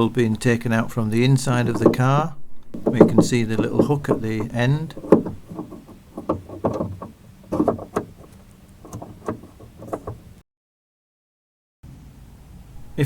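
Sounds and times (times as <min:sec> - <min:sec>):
plastic door handle clicking: 0:01.6 - 0:02.1, 0:02.8 - 0:10.4.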